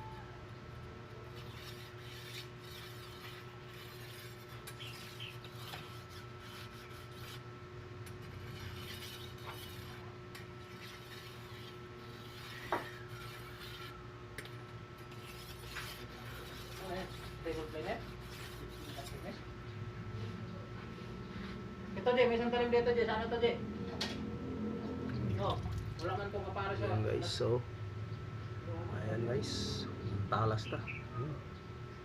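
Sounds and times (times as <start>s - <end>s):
steady hum: 0.0s - 32.0s
blade scraping against abrasive: 1.3s - 7.4s, 8.1s - 19.4s.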